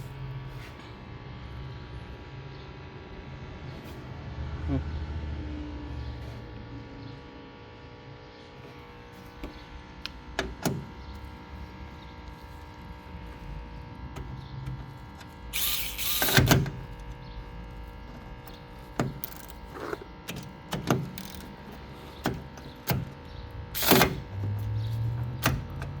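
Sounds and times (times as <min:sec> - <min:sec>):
electric ratchet motor whirring: 0:10.5 - 0:26.0
tool clicks and knocks: 0:18.5 - 0:23.2.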